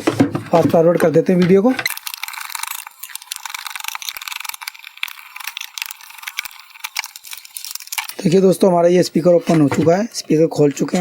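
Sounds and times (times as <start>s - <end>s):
rapid clicking and rattling: 1.4s - 8.2s.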